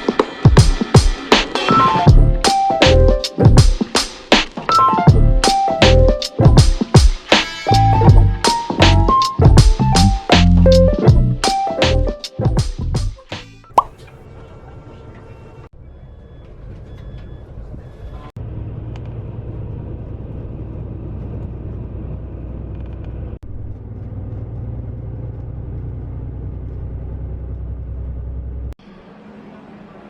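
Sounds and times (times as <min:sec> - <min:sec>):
vehicle engine rumbling: 0:18.4 - 0:30.0.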